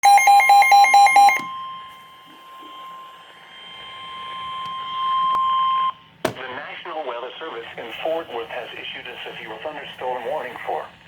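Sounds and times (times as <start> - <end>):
steady warning alarm tone: 0.0 - 6.0.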